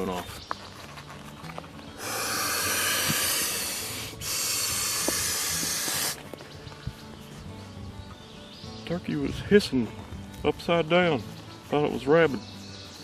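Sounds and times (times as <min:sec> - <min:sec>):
long loud hisses: 0:02.0 - 0:06.2.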